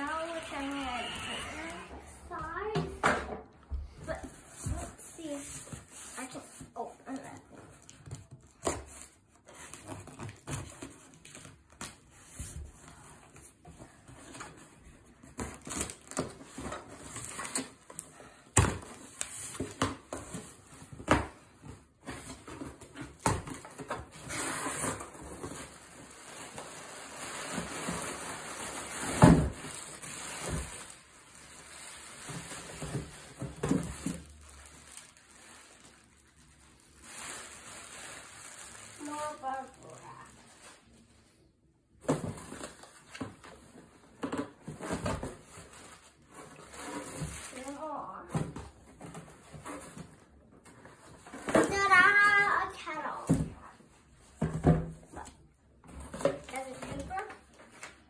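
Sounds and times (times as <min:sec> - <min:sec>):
packaging rustling: 0:22.0 - 0:41.2.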